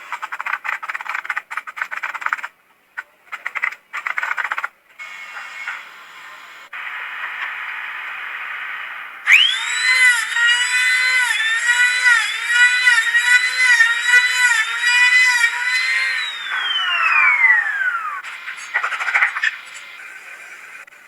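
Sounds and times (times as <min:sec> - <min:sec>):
machine motor whining: 0:09.3 - 0:20.9
steady mechanical hiss: 0:16.4 - 0:21.0.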